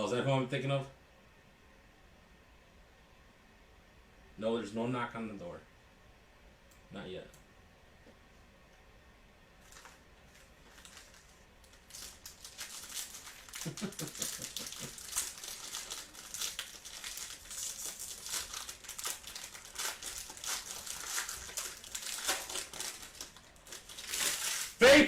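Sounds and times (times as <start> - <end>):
foil wrapper crinkling: 9.6 - 24.9.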